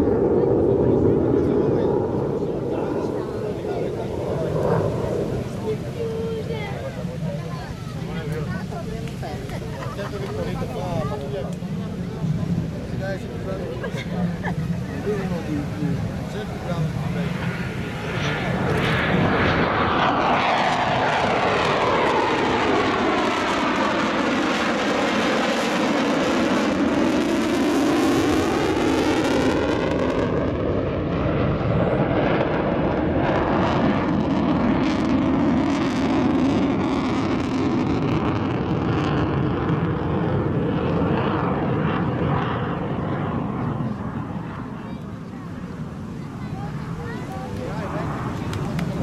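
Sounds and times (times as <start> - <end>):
jet flying past: 0.0 - 49.0.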